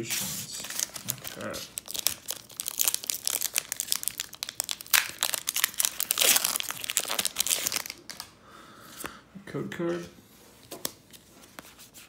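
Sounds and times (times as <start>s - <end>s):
foil wrapper tearing and crinkling: 0.6s - 8.2s.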